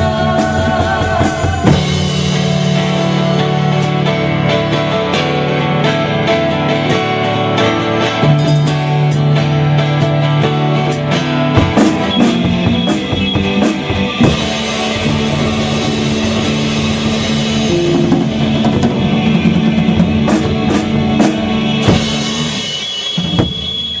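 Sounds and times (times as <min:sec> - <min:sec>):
rock band playing: 0:00.0 - 0:24.0
cymbal crashes: 0:12.0 - 0:24.0.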